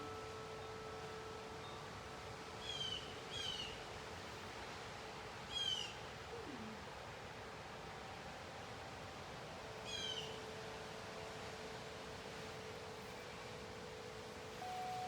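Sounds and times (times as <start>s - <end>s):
low ringing tone: 0.0s - 2.2s, 12.7s - 15.0s.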